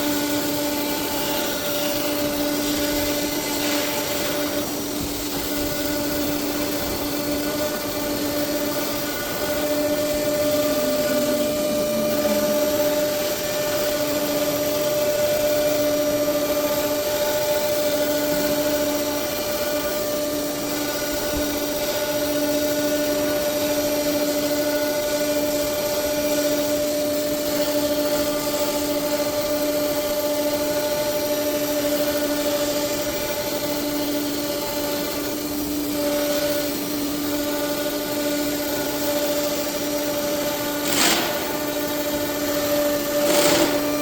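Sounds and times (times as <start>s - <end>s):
router spindle whine: 0.0s - 44.0s.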